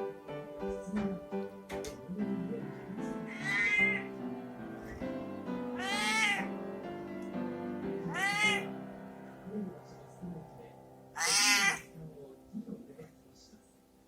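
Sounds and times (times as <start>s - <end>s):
background music: 0.0s - 14.0s
cat meowing: 3.2s - 4.1s, 5.8s - 6.5s, 8.0s - 8.7s, 11.2s - 11.9s.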